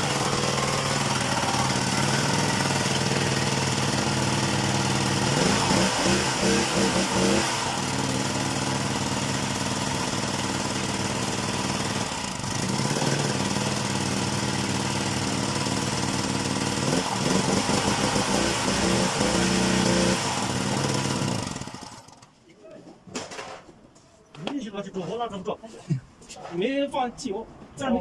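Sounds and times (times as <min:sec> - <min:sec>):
generator engine running unevenly: 0:00.0 - 0:22.2.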